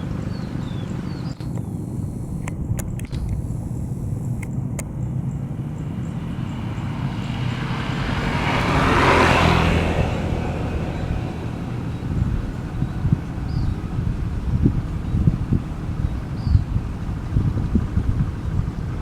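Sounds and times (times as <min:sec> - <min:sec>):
steady low rumble: 0:00.3 - 0:19.0
vehicle driving past: 0:03.2 - 0:15.3.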